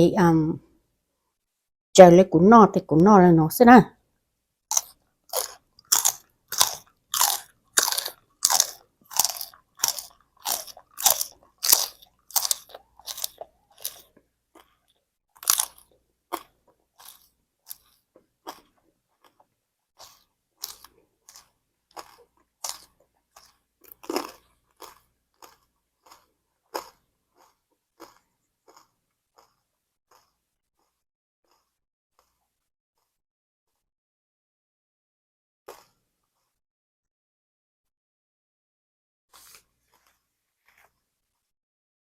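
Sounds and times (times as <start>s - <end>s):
person chewing crunchy food: 4.7s - 33.2s, 35.7s - 36.6s, 39.3s - 41.0s.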